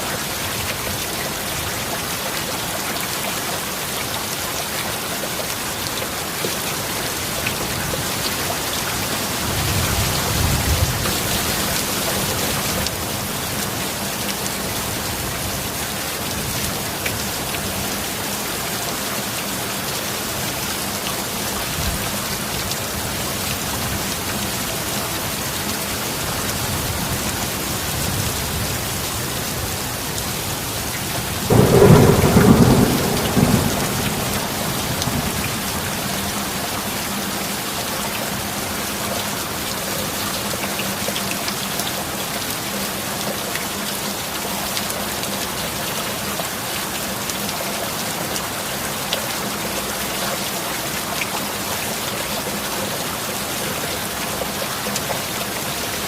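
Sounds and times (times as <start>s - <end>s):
steady rain falling: 0.0s - 56.0s
thunder clap rumbling: 31.5s - 36.6s.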